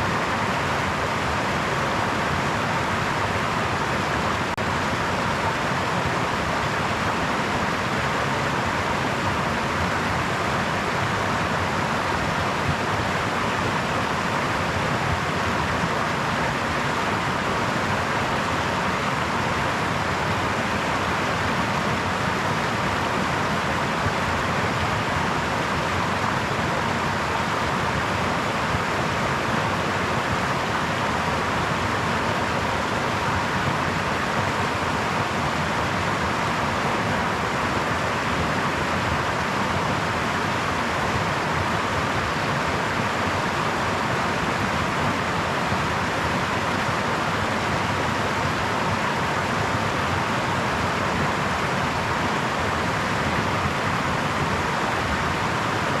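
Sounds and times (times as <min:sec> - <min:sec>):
brook flowing: 0:00.0 - 0:56.0.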